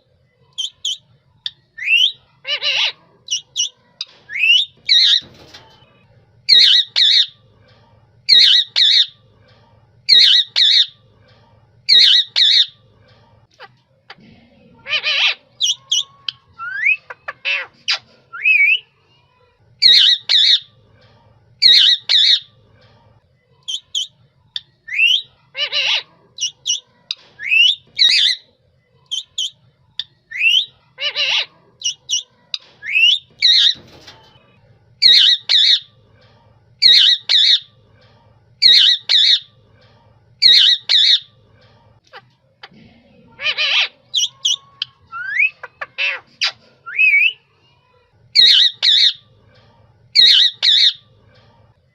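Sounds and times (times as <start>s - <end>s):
parrot squawking: 1.8s - 3.7s, 6.5s - 7.4s, 8.3s - 9.2s, 10.1s - 11.0s, 11.9s - 12.8s, 14.8s - 18.8s, 19.8s - 20.7s, 21.6s - 22.5s, 24.9s - 26.8s, 30.3s - 32.3s, 35.0s - 35.9s, 36.8s - 37.7s, 38.6s - 39.5s, 40.4s - 41.3s, 43.4s - 47.4s, 48.4s - 49.2s, 50.2s - 51.0s.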